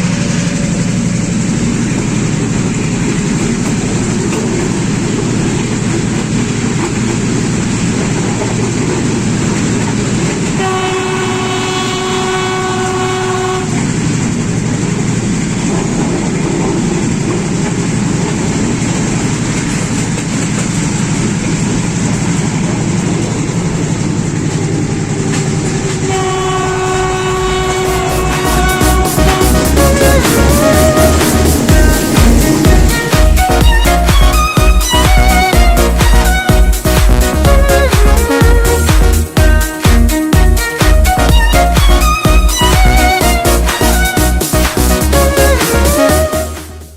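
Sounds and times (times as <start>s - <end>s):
diesel locomotive rumbling: 0.0s - 46.9s
train horn: 10.4s - 14.0s, 25.3s - 38.8s, 39.4s - 46.9s.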